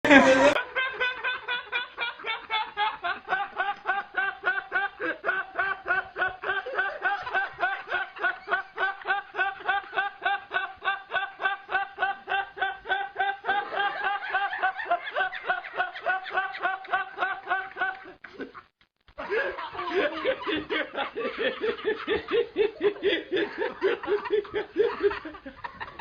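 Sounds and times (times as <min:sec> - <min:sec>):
high-pitched voice laughing: 0:00.0 - 0:00.6.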